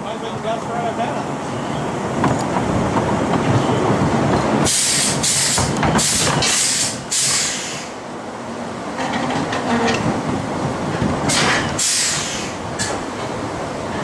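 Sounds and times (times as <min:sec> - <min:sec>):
roller coaster rumbling on track: 0:00.0 - 0:14.0
sharp air hisses: 0:04.6 - 0:08.0, 0:11.3 - 0:12.6.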